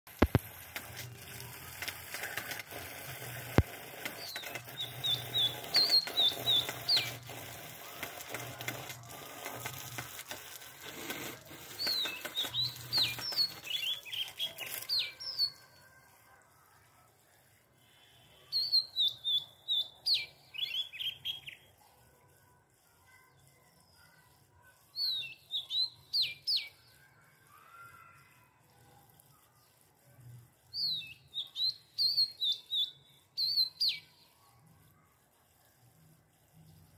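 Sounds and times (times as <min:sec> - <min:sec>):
steady hiss: 0:00.1 - 0:14.8
bird chirping: 0:02.2 - 0:16.0, 0:18.4 - 0:21.9, 0:25.0 - 0:28.4, 0:30.7 - 0:34.6.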